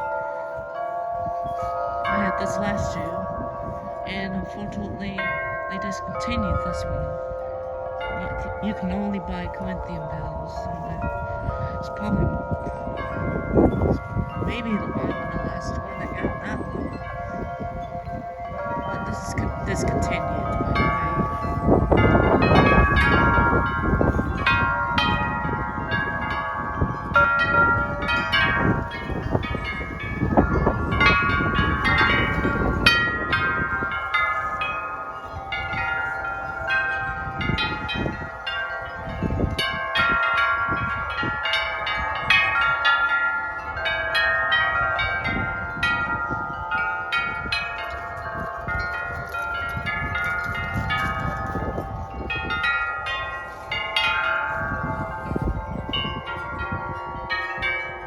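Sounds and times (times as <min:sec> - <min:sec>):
metal wind chimes ringing: 0:00.0 - 0:58.0
wind rumbling on microphone: 0:00.0 - 0:58.0.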